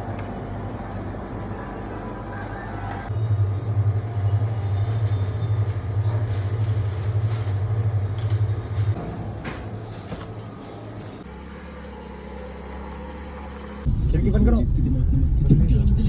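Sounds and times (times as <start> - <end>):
car cabin drone: 11.2 - 16.0.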